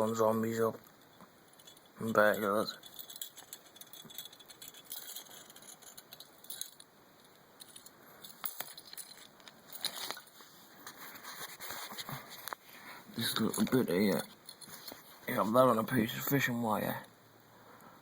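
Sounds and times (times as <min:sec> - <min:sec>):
small hard parts clicking and rattling: 0:00.8 - 0:11.2.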